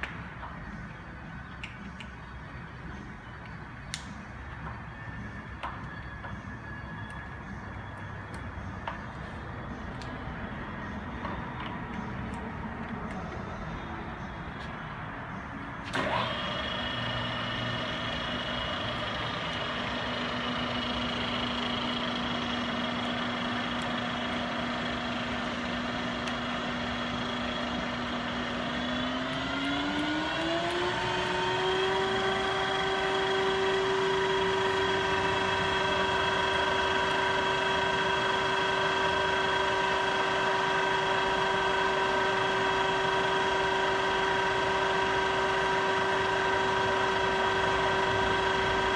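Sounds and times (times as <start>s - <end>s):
milling spindle whine: 15.9s - 48.9s.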